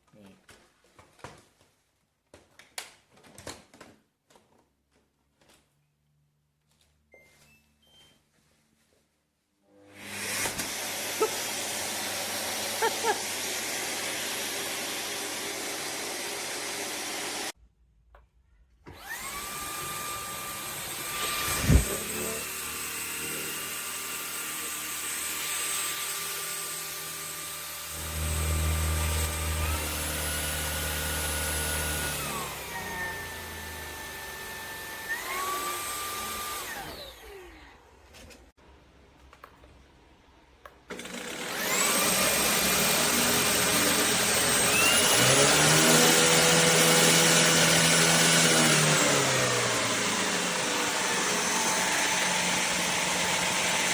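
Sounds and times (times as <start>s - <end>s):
stick vacuum motor running: 9.9s - 17.5s, 26.2s - 37.5s, 40.9s - 53.9s.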